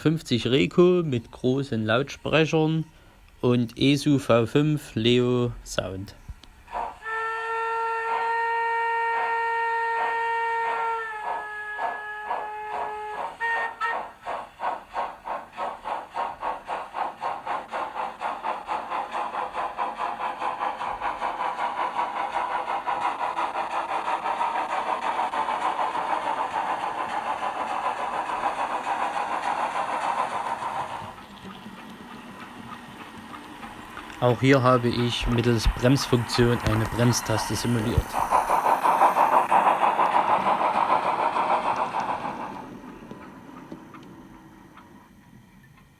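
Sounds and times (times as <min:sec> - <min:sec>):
steady steam hiss: 0:00.0 - 0:45.9
steam exhaust chuffing: 0:04.0 - 0:45.9
steam locomotive chime whistle: 0:07.0 - 0:14.2.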